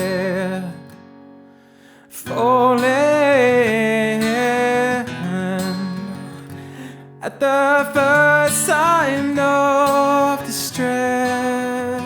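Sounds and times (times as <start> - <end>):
acoustic guitar: 0.0 - 12.0.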